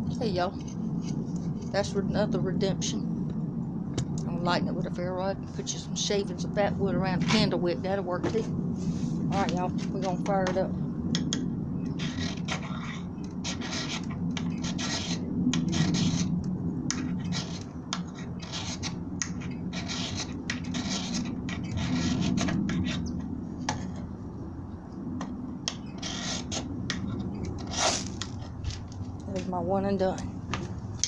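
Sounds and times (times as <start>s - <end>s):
ferro rod rasping strokes: 12.0s - 16.3s, 16.9s - 23.1s, 25.7s - 26.7s, 27.6s - 28.5s.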